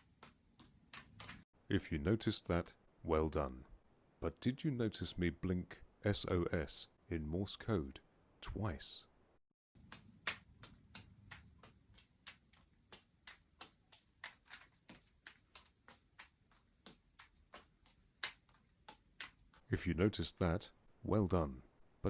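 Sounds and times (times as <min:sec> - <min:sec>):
soft taps of caught balls: 0:09.8 - 0:19.6.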